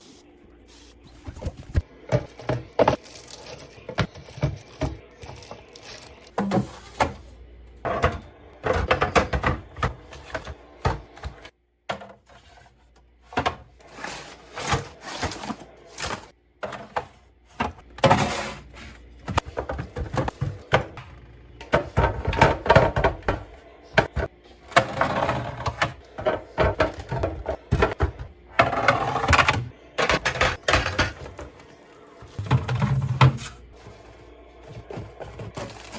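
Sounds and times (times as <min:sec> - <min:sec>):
bottles and cans clattering: 0:01.3 - 0:12.4, 0:13.3 - 0:21.0, 0:21.6 - 0:35.9.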